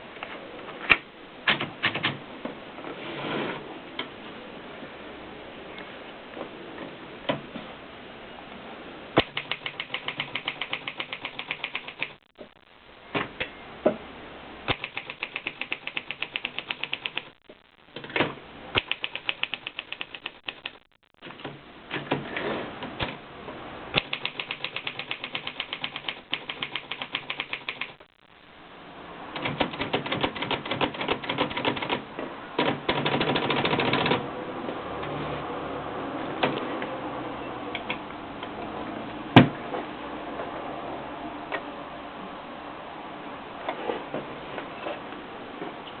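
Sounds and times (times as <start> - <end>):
typewriter key strikes: 9.2 - 12.2, 14.7 - 17.3, 24.0 - 28.0.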